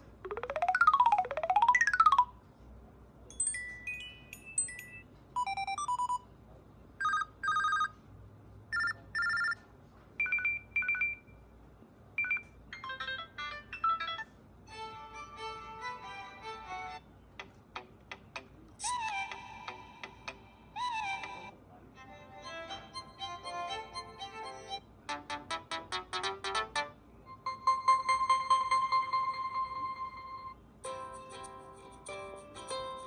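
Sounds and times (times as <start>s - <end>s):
phone ringtone melodies: 0.2s - 2.4s, 3.4s - 6.2s, 12.2s - 14.3s, 22.7s - 33.0s.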